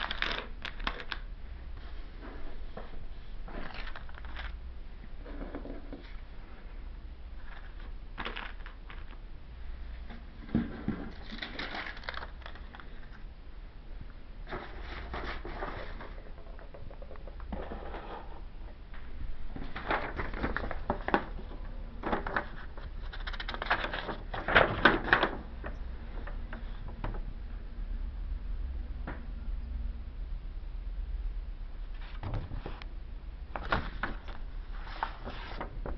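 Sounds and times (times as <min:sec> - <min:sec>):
packaging crinkling: 0:00.0 - 0:01.3, 0:03.5 - 0:04.6, 0:07.4 - 0:09.2, 0:11.1 - 0:13.2, 0:19.5 - 0:25.4
plastic parts clattering: 0:00.0 - 0:01.3, 0:03.5 - 0:04.6, 0:07.4 - 0:09.2, 0:10.1 - 0:13.2
steady low hum: 0:00.0 - 0:35.9.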